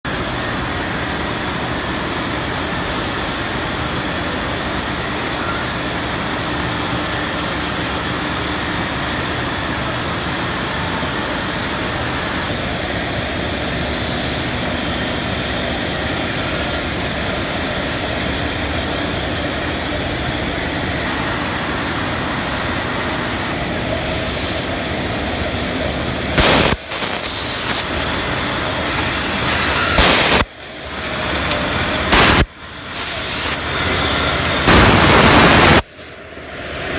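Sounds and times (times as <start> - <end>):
winding machine running: 0.1 - 35.2
loud mechanical burst: 25.7 - 31.1, 32.0 - 36.2.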